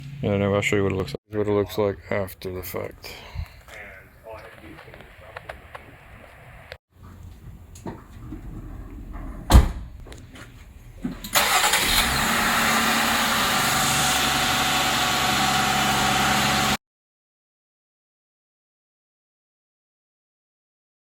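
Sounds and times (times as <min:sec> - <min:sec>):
thump: 0:09.4 - 0:10.2.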